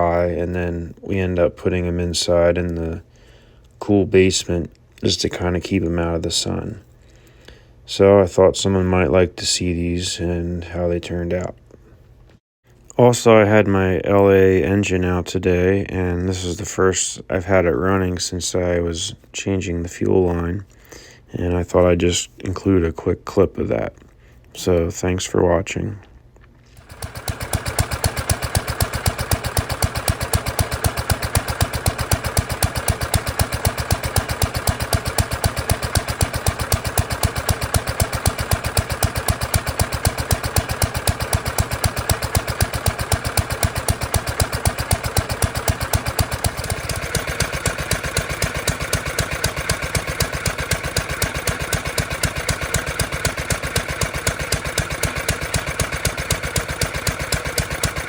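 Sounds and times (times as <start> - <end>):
single-cylinder engine running: 26.8 - 58.0.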